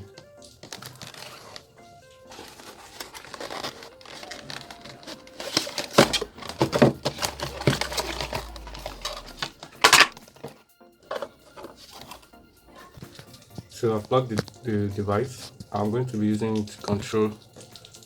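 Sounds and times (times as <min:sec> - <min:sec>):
crinkling and rustling: 0:00.0 - 0:15.9
knocks and scrapes: 0:05.4 - 0:10.2
low rumble: 0:06.2 - 0:10.2.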